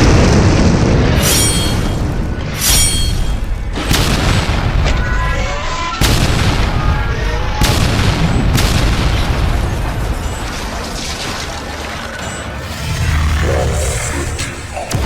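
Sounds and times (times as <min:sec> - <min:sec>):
explosion blasts with rumble: 0:00.0 - 0:11.0.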